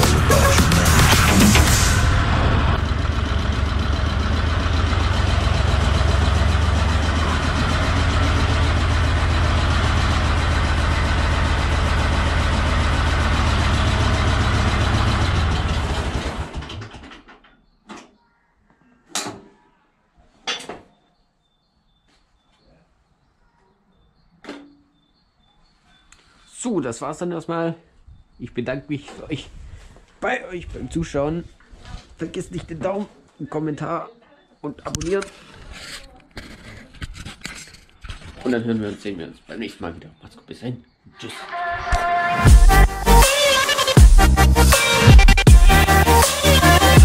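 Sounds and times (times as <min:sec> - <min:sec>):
tractor engine running: 0:00.0 - 0:17.2
engine winding down: 0:00.0 - 0:17.3, 0:42.3 - 0:47.0.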